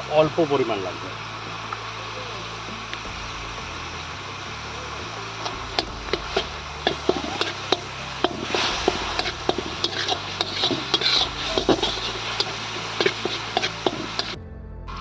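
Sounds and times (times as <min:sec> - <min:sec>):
spoon tapping and scraping dish: 0:05.7 - 0:14.4.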